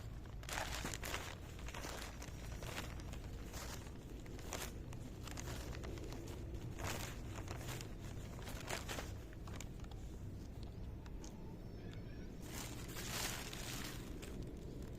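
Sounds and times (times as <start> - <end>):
hands crumbling bread: 0.0 - 11.4
steady low rumble: 0.0 - 14.9.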